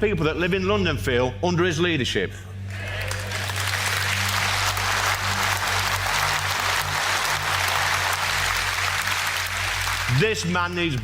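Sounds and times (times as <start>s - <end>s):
audience applauding: 2.7s - 10.5s.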